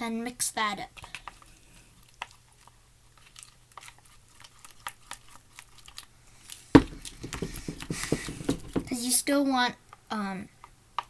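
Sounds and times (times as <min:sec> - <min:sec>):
knock: 0:06.8 - 0:09.0.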